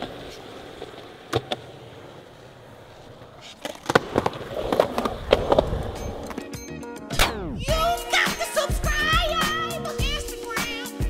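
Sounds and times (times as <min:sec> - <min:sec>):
skateboard clacks and knocks: 0:00.0 - 0:02.3, 0:03.2 - 0:06.6
skateboard rolling on concrete: 0:00.0 - 0:07.1.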